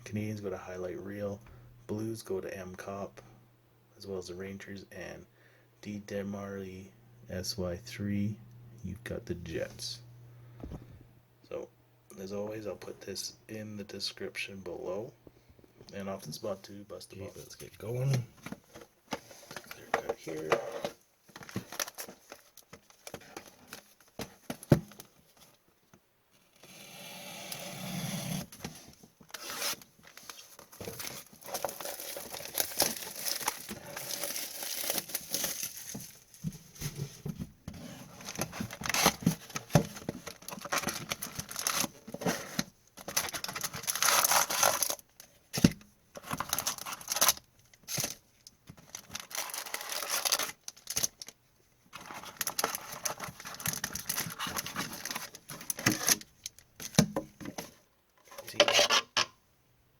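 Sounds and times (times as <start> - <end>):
plastic wrapping crinkling: 29.2 - 36.5, 38.1 - 45.4, 46.2 - 57.0.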